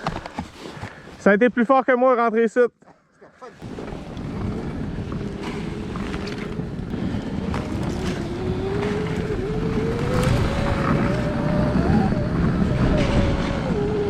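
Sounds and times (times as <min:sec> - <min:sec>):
electric motor whine: 0:03.6 - 0:14.0
track churning through snow: 0:03.6 - 0:14.0
wind on microphone: 0:03.6 - 0:14.0.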